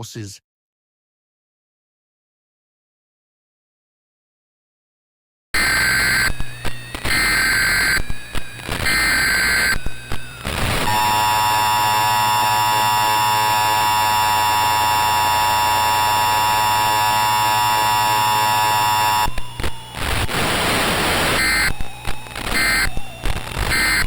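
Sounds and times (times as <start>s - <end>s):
static hiss: 5.6s - 24.0s
two-tone alarm: 5.6s - 24.0s.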